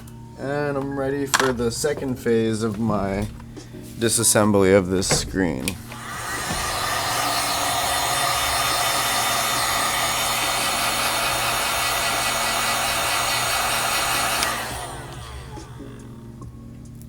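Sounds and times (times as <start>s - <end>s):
heat gun rushing hiss: 5.8s - 16.4s.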